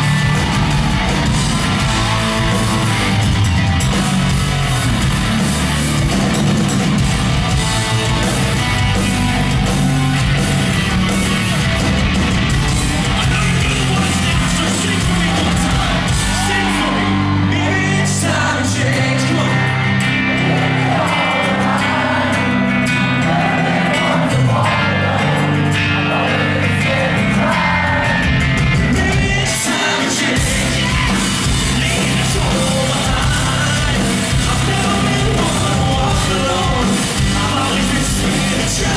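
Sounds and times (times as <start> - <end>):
rock band playing live: 0.0 - 38.9
person singing lead vocal: 13.1 - 38.9.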